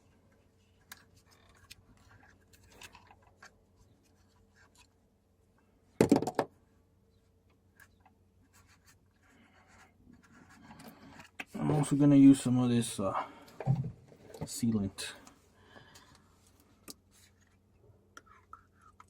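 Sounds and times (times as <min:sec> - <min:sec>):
clatter of hard knocks: 0:06.0 - 0:06.5.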